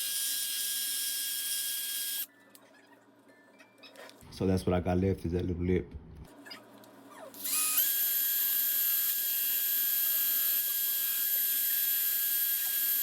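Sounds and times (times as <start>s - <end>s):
rotary tool whining: 0.0s - 2.3s, 7.3s - 13.0s
rotary tool grinding plastic: 7.3s - 13.0s.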